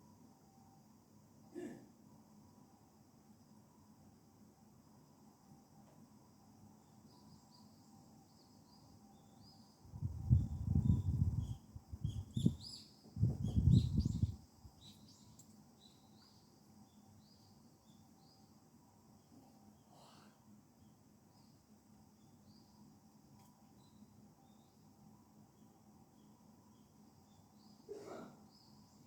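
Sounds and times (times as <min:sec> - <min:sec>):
small bird chirping: 0:07.0 - 0:18.5.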